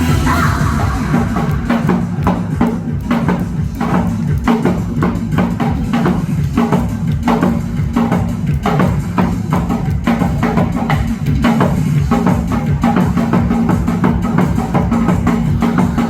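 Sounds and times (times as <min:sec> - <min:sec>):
hourglass drum sharp strokes: 0:00.0 - 0:05.2
backing music with bass line: 0:00.0 - 0:16.0.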